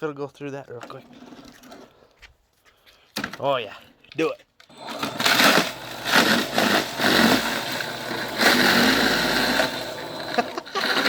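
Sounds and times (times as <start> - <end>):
electric snow shovel motor running: 4.7 - 11.0.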